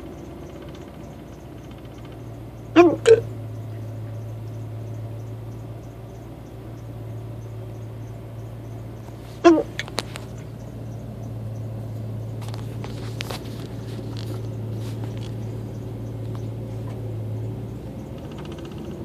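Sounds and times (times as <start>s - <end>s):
low hum inside truck cab: 0.0s - 19.0s
soft ticks and rustles: 9.0s - 18.5s.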